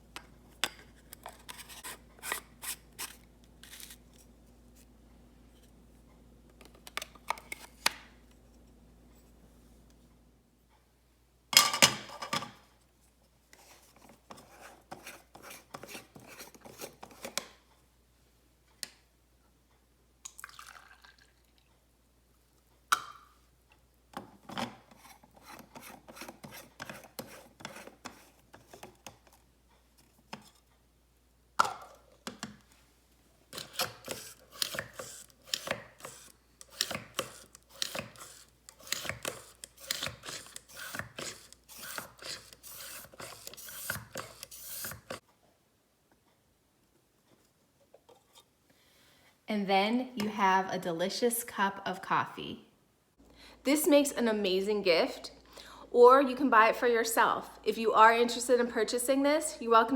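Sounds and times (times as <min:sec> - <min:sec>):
water dripping or pouring: 0:20.2 - 0:21.7.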